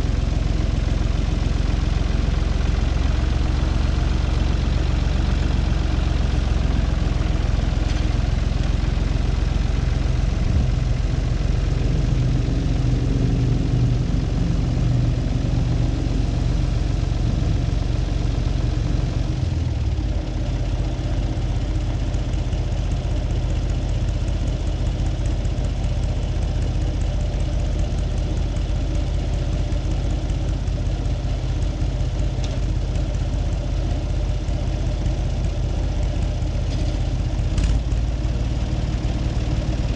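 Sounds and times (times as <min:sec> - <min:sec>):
tractor engine running: 0:00.0 - 0:39.9.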